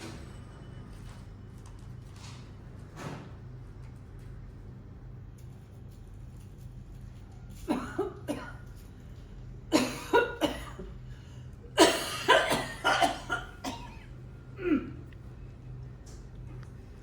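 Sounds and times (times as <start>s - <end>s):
person coughing: 7.7s - 8.6s, 9.7s - 11.0s, 11.8s - 15.1s.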